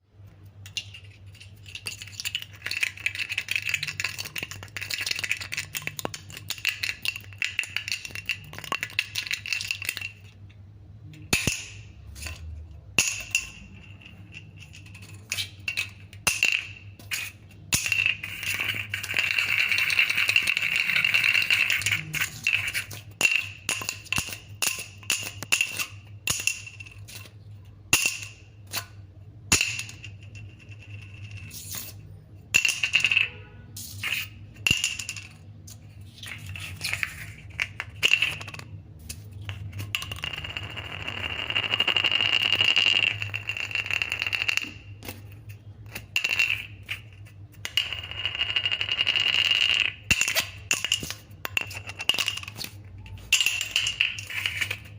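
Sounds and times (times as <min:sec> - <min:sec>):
bottle cap clicking and rattling: 0:00.6 - 0:10.5, 0:11.2 - 0:54.9.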